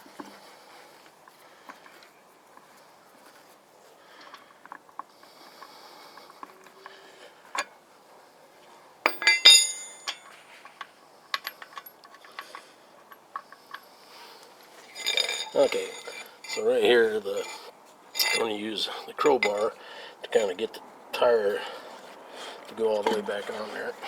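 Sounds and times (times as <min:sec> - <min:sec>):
metal tools clinking: 0:09.1 - 0:10.4, 0:14.8 - 0:20.6.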